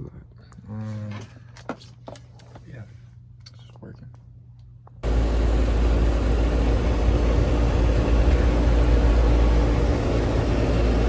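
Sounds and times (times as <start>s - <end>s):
car engine and road rumble: 5.0s - 11.0s.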